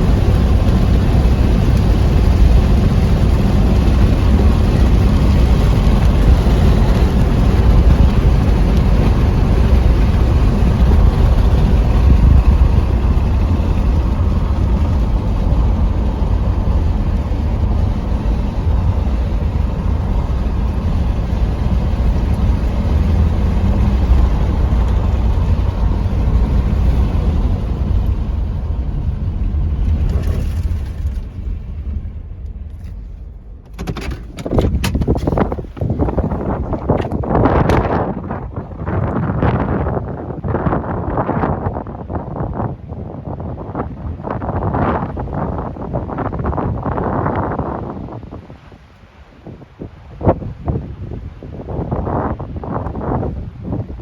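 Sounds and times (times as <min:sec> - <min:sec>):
car road and engine rumble: 0:00.0 - 0:54.0.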